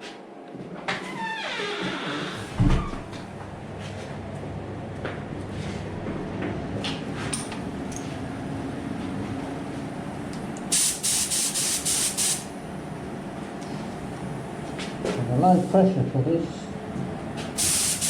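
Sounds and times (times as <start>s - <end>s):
steady low hum: 2.4s - 18.0s
spray gun hissing bursts: 10.7s - 12.5s, 17.6s - 18.0s.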